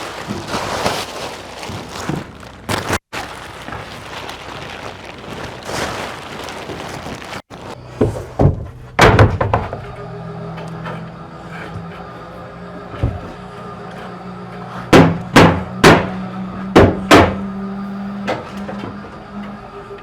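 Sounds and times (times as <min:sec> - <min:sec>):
plywood thumps and knocks: 0:08.0 - 0:10.0, 0:14.9 - 0:17.4.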